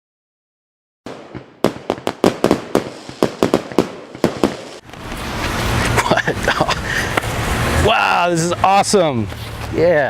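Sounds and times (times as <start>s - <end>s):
firecrackers popping: 1.1s - 6.2s.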